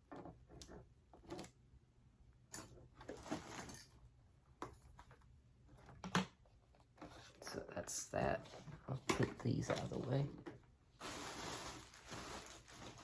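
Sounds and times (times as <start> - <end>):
packaging rustle: 11.0 - 13.0.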